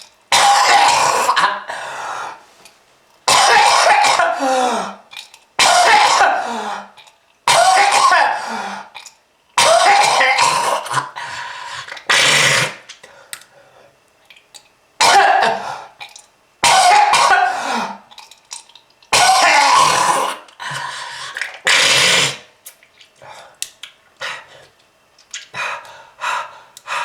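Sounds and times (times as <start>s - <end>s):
person coughing harshly: 0.3s - 1.7s, 3.3s - 5.0s, 5.6s - 6.8s, 7.5s - 8.6s, 9.6s - 11.2s, 15.0s - 15.8s, 16.6s - 18.0s, 19.1s - 20.5s.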